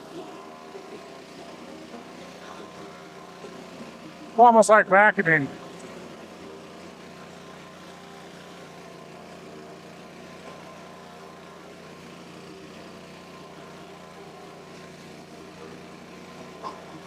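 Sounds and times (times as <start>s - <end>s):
pressure washer engine running: 0.0s - 17.0s
high-pressure water spraying: 5.2s - 17.0s.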